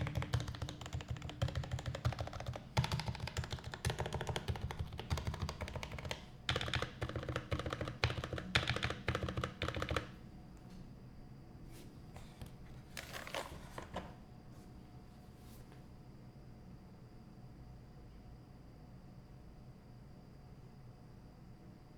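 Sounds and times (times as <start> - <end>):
typing on mechanical keyboard: 0.0 - 10.2.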